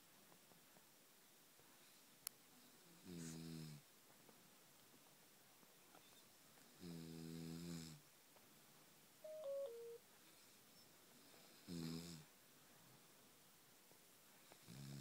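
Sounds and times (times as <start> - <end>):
falling electronic beep: 9.3 - 10.0.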